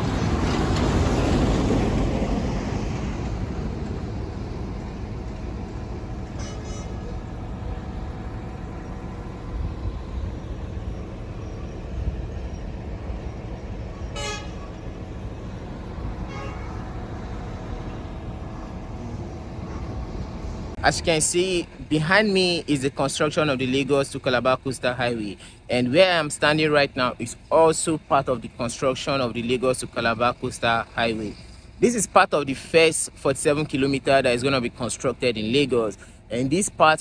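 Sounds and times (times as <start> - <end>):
road traffic rumble: 0.0 - 37.0
vehicle horn toots: 6.3 - 7.2, 14.1 - 14.8, 16.2 - 16.9.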